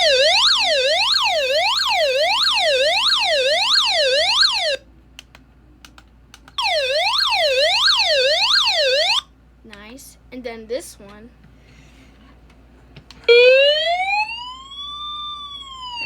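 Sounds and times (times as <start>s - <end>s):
electronic siren alarm: 0.0s - 4.8s, 6.6s - 9.2s, 13.3s - 16.0s.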